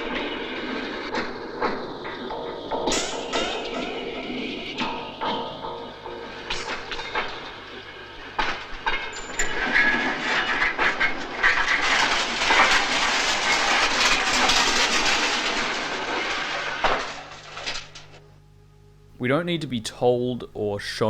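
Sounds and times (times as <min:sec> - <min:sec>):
train wheels clacking over track: 0:00.0 - 0:16.0.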